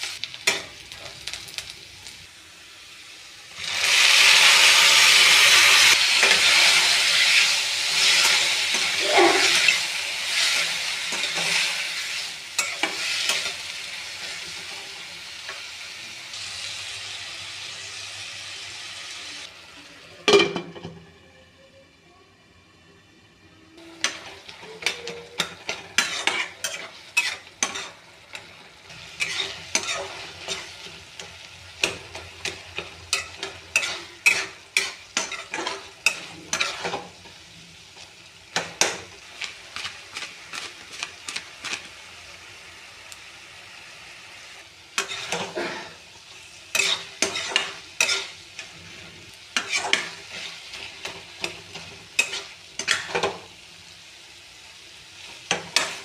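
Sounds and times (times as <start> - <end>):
chutney sizzling in a pan: 0.0 - 20.4, 23.3 - 56.0
spoon stirring against pan: 23.9 - 42.0, 44.9 - 53.5, 55.2 - 56.0.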